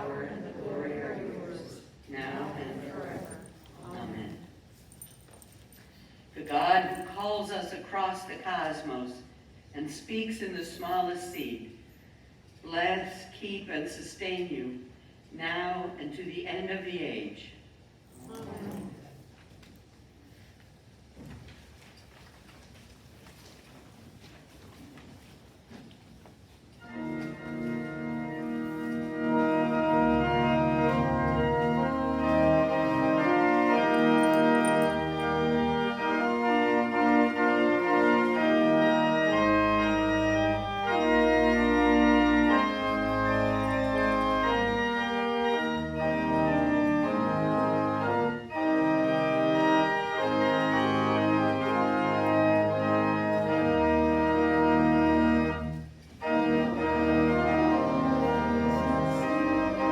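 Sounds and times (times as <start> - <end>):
church organ chords: 0.0 - 1.3, 26.8 - 59.9.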